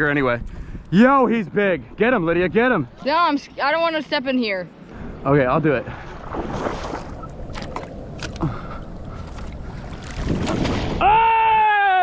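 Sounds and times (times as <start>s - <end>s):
splashing in shallow water: 6.0s - 11.1s
person yelling: 11.0s - 12.0s.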